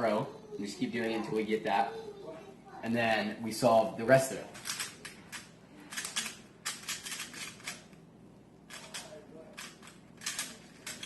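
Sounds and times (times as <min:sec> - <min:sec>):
rapid plastic cube clicks: 0:05.9 - 0:07.8.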